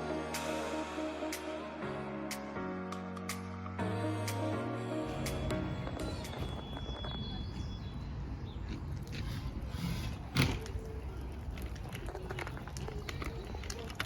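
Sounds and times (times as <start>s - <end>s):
background music: 0.0s - 7.3s.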